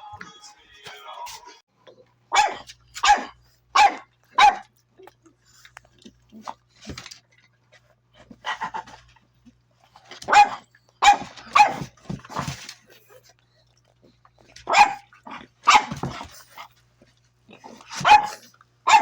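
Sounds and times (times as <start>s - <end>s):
puppies barking and yapping: 14.6s - 16.6s, 17.8s - 19.0s.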